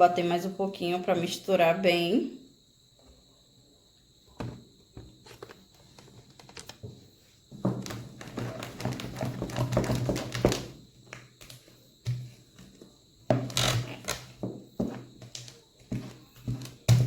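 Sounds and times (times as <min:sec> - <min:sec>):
utensil beating batter in a bowl: 0:07.5 - 0:17.0.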